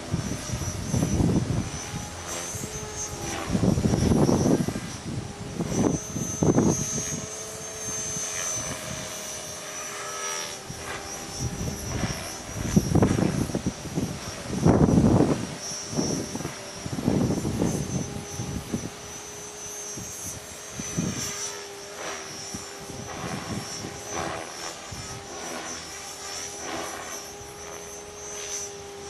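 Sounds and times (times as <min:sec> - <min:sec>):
wind buffeting microphone: 0:00.0 - 0:10.0, 0:10.6 - 0:19.2, 0:20.0 - 0:25.6
rc helicopter motor whine: 0:00.0 - 0:29.0.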